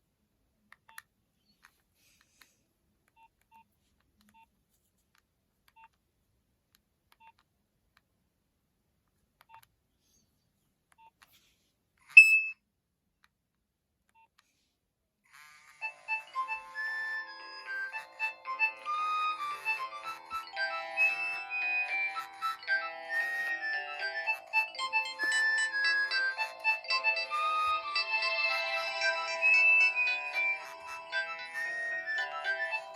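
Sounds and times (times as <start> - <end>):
ringtone melody: 12.2 - 12.5, 15.8 - 32.9
loud high beep: 12.2 - 12.6
phone keypad beeps: 12.2 - 12.6.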